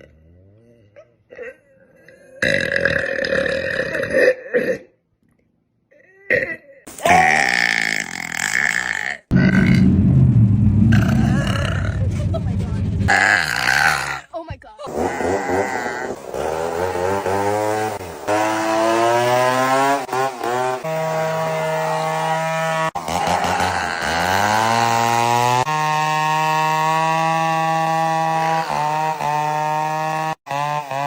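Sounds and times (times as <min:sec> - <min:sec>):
woman burping loudly: 0:00.0 - 0:05.0, 0:05.9 - 0:09.9, 0:10.9 - 0:12.0.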